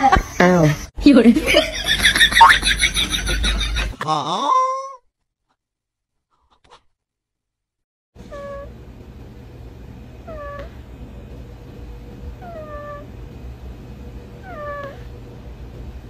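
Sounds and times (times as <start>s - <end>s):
steady background hum: 0.0s - 4.0s, 8.2s - 16.0s
cat meowing: 8.3s - 8.7s.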